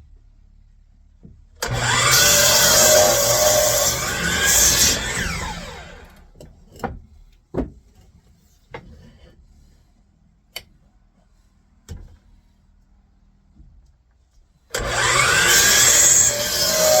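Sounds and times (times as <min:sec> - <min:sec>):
miter saw spinning down: 0:01.6 - 0:06.2, 0:14.8 - 0:17.0.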